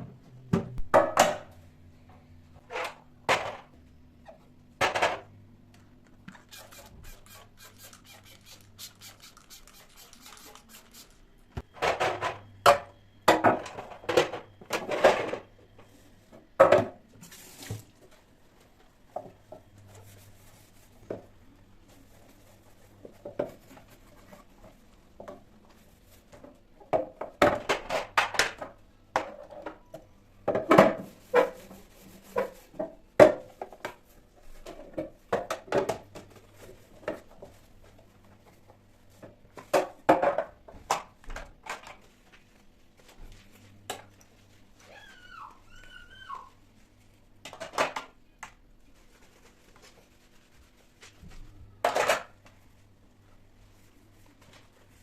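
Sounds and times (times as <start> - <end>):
short wavering squeak: 6.4 - 8.6.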